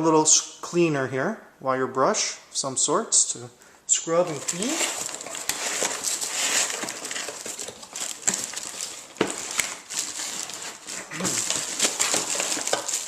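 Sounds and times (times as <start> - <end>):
packaging rustling and crinkling: 4.1 - 13.0.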